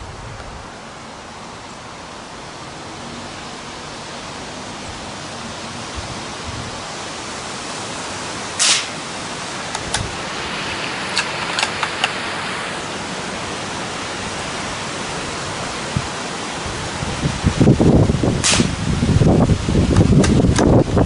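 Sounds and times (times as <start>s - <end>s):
wind noise on microphone: 0.0s - 1.3s, 5.8s - 8.0s, 8.6s - 21.0s
rifle shot: 8.6s - 9.0s, 18.4s - 18.7s.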